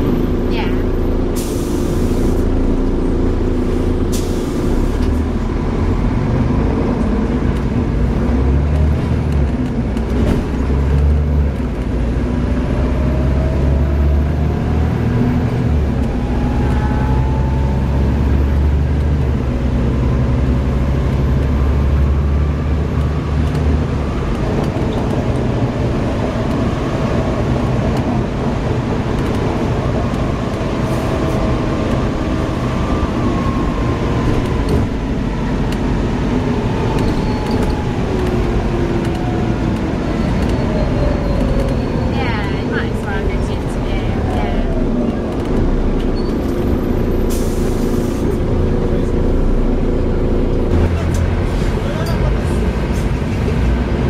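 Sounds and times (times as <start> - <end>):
bus diesel engine under load: 0.0 - 54.0.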